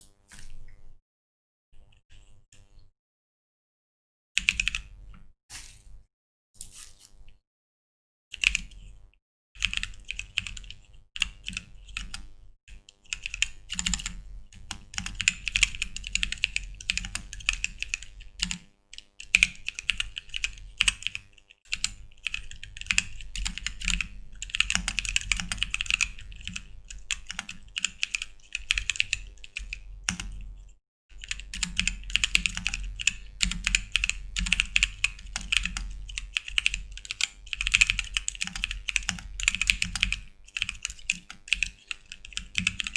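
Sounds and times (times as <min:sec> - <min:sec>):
mechanical keyboard typing: 0:09.6 - 0:12.3, 0:13.0 - 0:30.4, 0:31.2 - 0:42.9.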